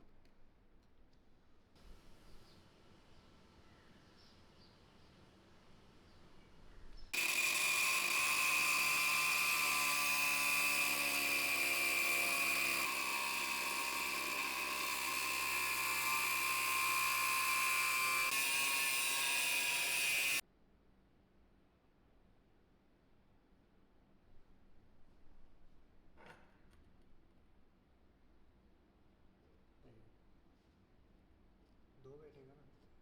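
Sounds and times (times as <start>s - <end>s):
high-pitched electric motor whine: 7.2s - 20.4s.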